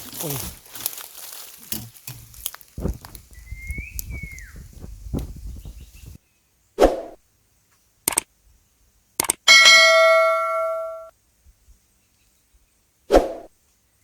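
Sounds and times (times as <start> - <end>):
short clicks: 8.1 - 8.3, 9.2 - 9.5
bell-like metallic ding: 9.5 - 11.1.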